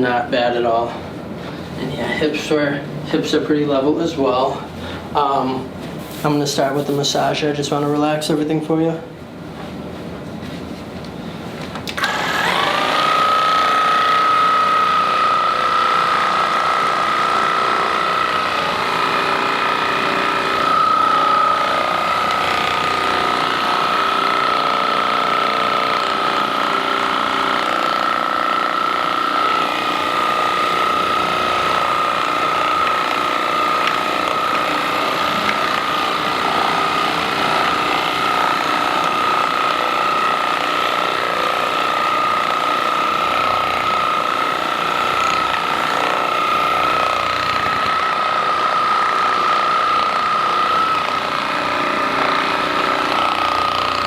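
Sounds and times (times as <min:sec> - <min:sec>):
percussion massager buzzing: 0:11.8 - 0:54.0.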